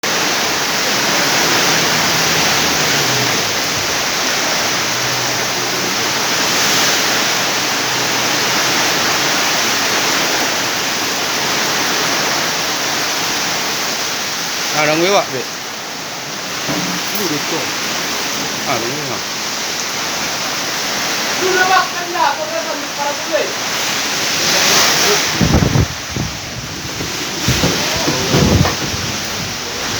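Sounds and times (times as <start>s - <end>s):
strong wind: 0.0s - 14.6s, 23.6s - 29.9s
heavy rain: 0.0s - 29.9s.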